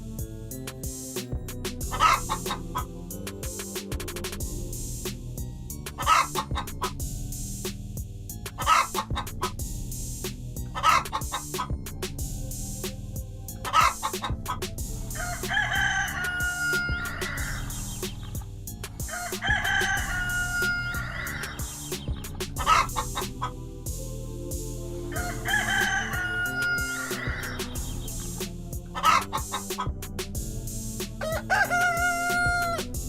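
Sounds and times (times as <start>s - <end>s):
rooster crowing: 1.9s - 2.6s, 6.0s - 6.4s, 8.6s - 9.0s, 10.8s - 11.1s, 15.1s - 17.9s, 19.1s - 21.6s, 22.6s - 23.0s, 25.1s - 27.8s, 29.0s - 29.4s, 31.2s - 32.9s.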